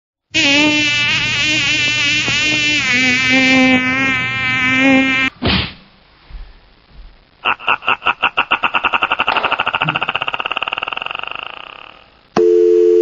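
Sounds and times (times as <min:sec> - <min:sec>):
fly-like buzz: 0:00.3 - 0:05.3.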